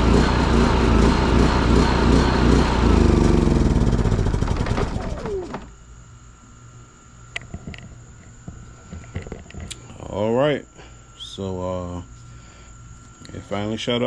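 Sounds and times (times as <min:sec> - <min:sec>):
generator engine sputtering out: 0:00.0 - 0:05.7.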